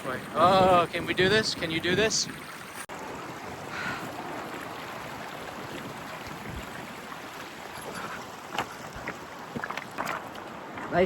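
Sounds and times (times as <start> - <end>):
knocks or splashes: 7.9 - 11.0.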